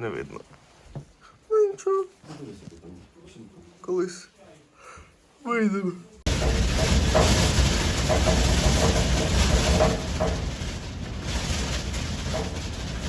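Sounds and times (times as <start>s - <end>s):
heavy rain: 6.3s - 13.0s.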